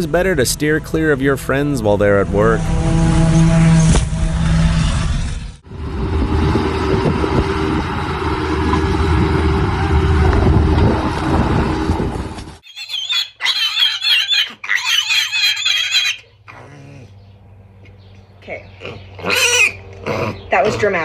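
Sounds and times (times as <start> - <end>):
machine humming noise: 0.0 - 12.4
pig squealing: 12.6 - 17.1, 18.7 - 21.0.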